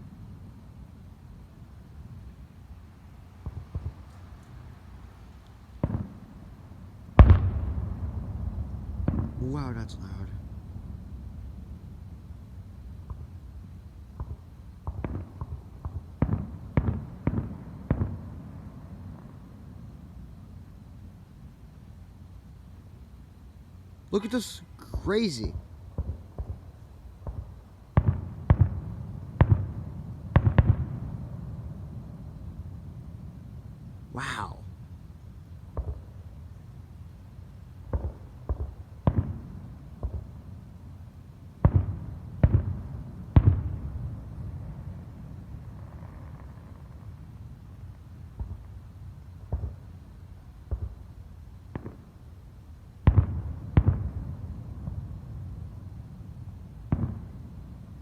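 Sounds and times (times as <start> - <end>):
fireworks bangs: 3.4 - 4.6, 5.7 - 10.6, 24.1 - 26.6
fireworks booming: 3.4 - 5.1, 5.7 - 11.5, 14.1 - 19.4, 24.1 - 32.2, 37.9 - 40.3, 41.6 - 44.9, 56.9 - 57.4.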